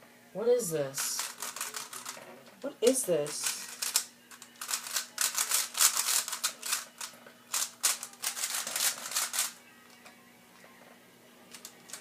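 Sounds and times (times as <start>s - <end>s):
plastic speed cube clacking: 1.2s - 2.2s, 3.4s - 9.6s.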